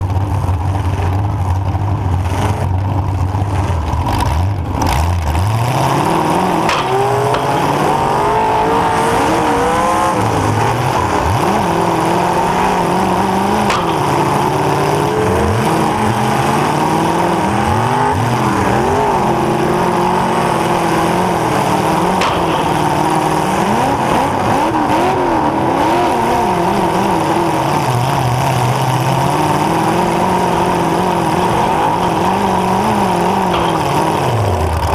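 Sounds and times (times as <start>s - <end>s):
car engine revving: 0.0s - 34.9s
sharp knocks: 6.5s - 10.7s, 11.8s - 17.3s, 20.8s - 25.3s.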